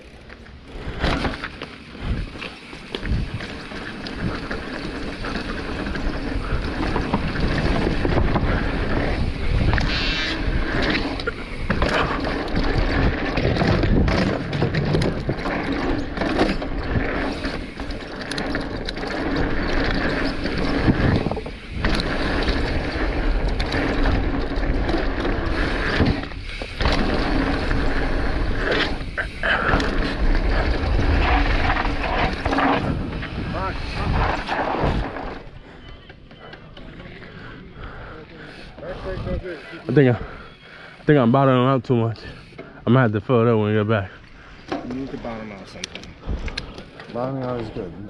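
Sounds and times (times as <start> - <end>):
tyres rolling over dirt and rocks: 0.0 - 38.2
bike chain and suspension rattling: 0.0 - 48.0
wind rushing over microphone: 2.0 - 2.4, 3.0 - 15.7, 19.5 - 35.5.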